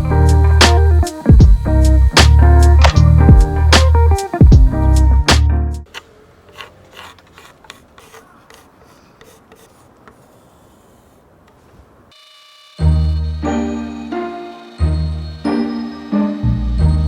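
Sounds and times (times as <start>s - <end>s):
hand tool scraping and rubbing: 5.9s - 11.8s.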